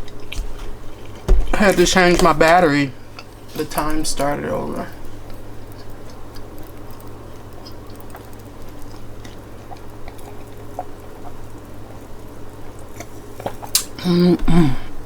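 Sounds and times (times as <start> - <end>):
person chewing food: 0.0 - 15.0
steady low hum: 0.0 - 15.0
wet mouth clicks: 13.0 - 14.0.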